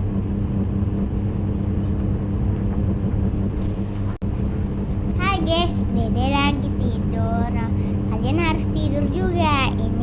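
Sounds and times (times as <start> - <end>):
low machine hum: 0.0 - 10.0.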